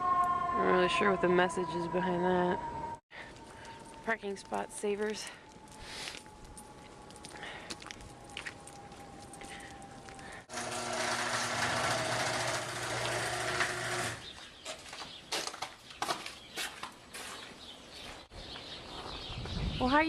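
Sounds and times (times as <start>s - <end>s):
small motor running: 10.5s - 14.3s
footsteps crunching through snow: 14.3s - 19.2s.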